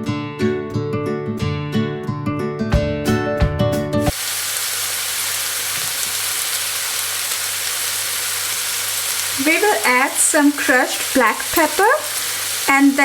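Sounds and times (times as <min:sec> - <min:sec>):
acoustic guitar music: 0:00.0 - 0:04.1
fish sizzling in a pan: 0:04.1 - 0:13.0.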